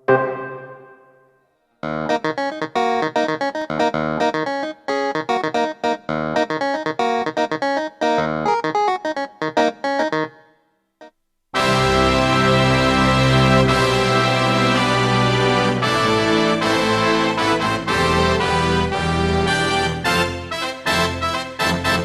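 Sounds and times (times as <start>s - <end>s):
keyboard piano chords: 0.0s - 10.5s.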